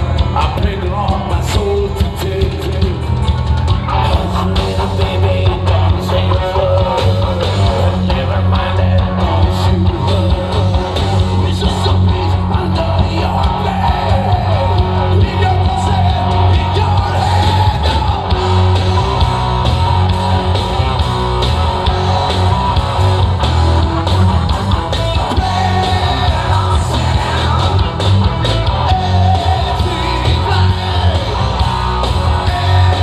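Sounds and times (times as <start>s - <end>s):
live rock band playing: 0.0s - 33.0s
person singing: 4.0s - 18.8s, 25.2s - 28.0s, 28.7s - 33.0s.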